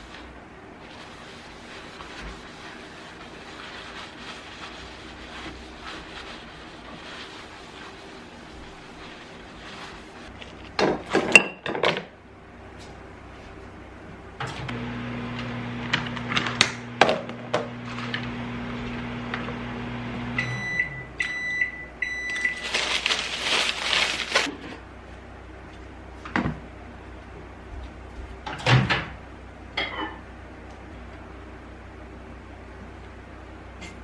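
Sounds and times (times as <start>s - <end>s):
microwave oven humming: 10.3s - 34.0s.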